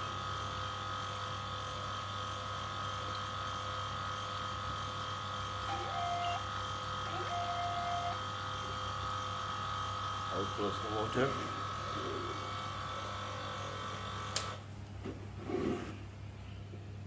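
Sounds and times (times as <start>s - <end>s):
electrical hum and buzz: 2.8s - 16.6s.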